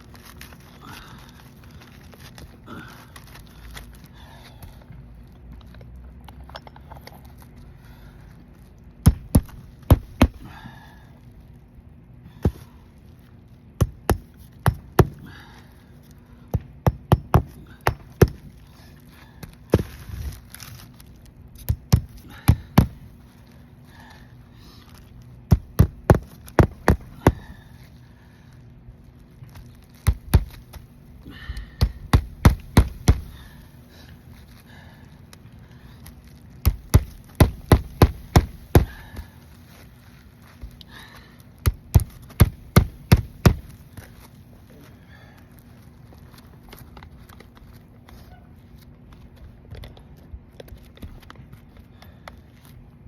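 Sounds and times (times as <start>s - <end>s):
hammer blows on a shingle roof: 9.0s - 10.5s, 13.8s - 15.3s, 16.5s - 18.6s, 21.7s - 23.1s, 25.5s - 27.6s, 31.7s - 33.5s, 36.6s - 39.3s, 41.6s - 43.8s.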